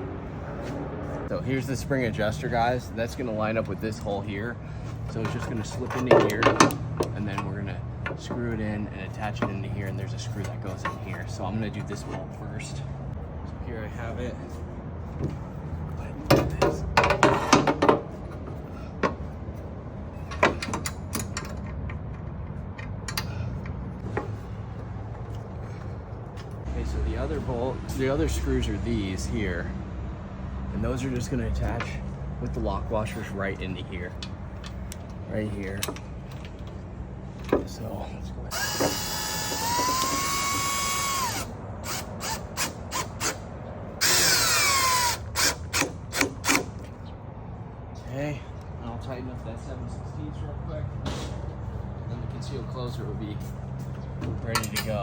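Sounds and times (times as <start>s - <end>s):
metal hardware clicking and clattering: 5.0s - 12.4s, 16.3s - 19.3s, 20.1s - 24.5s, 34.1s - 36.8s, 54.2s - 55.0s
cordless drill driving screws: 38.5s - 43.4s, 44.0s - 46.7s.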